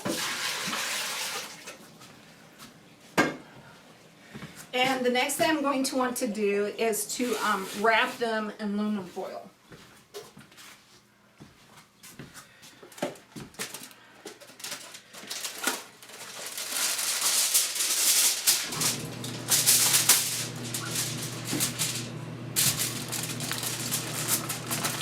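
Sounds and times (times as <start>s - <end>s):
aluminum foil crinkling: 13.2s - 25.0s
steady low hum: 18.7s - 25.0s.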